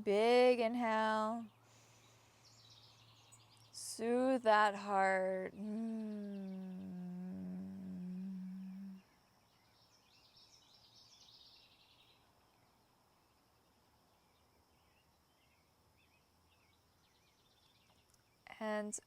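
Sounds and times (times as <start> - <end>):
faint birdsong chirps: 0.0 - 19.0
woman humming: 4.0 - 9.0.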